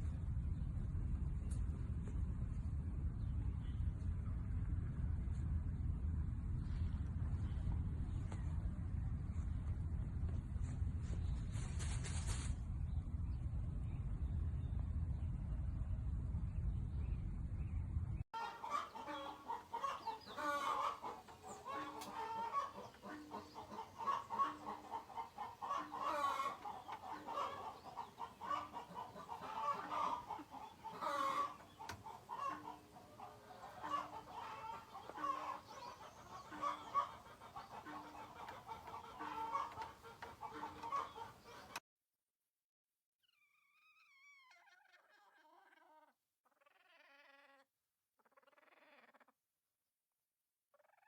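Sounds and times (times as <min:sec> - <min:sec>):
chickens clucking: 0:18.4 - 0:41.8.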